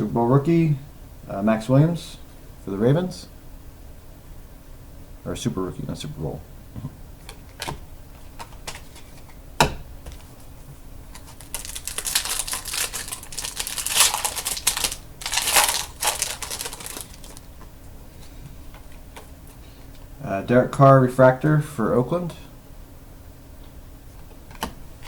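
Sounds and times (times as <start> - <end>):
pack wrapper crinkling: 11.2 - 17.5.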